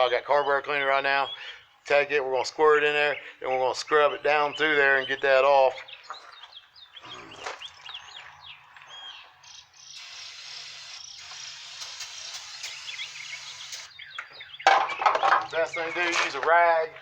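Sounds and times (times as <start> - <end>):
birds chirping: 0.0 - 17.0
aerosol spray hiss: 9.9 - 13.9.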